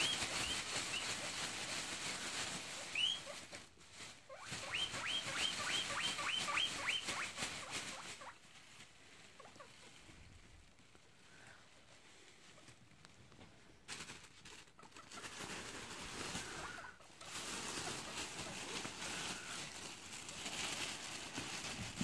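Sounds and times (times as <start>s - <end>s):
guinea pig squealing: 0.0s - 1.3s, 2.7s - 3.6s, 4.3s - 8.4s, 16.2s - 19.8s.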